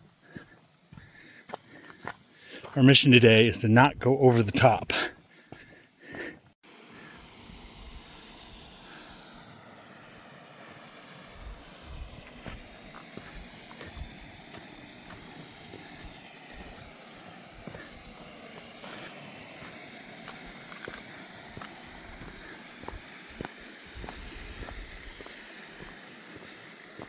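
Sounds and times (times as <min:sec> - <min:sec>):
footsteps on a trail: 0:00.0 - 0:03.5, 0:04.6 - 0:06.6, 0:11.4 - 0:27.0.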